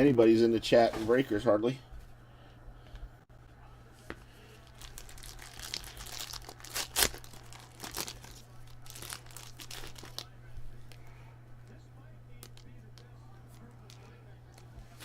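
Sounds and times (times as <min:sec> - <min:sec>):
foil wrapper tearing and crinkling: 0:04.6 - 0:10.4.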